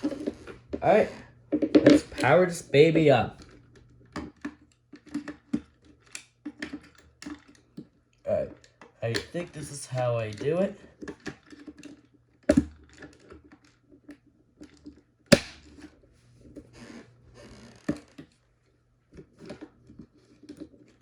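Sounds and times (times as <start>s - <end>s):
light plastic rattling: 3.3s - 15.1s.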